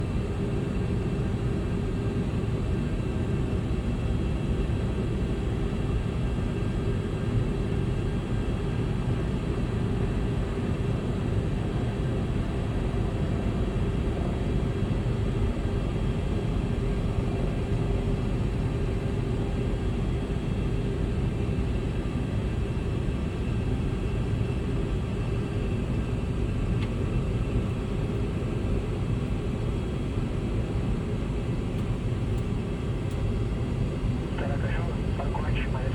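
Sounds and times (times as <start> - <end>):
aircraft engine rumble: 0.0 - 35.9
faint steady tones: 34.3 - 35.9.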